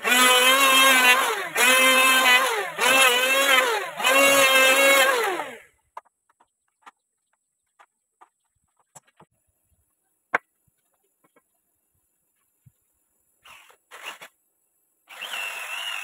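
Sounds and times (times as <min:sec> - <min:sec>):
power tool motor whine: 0:00.0 - 0:05.7, 0:13.4 - 0:14.3, 0:15.1 - 0:16.0.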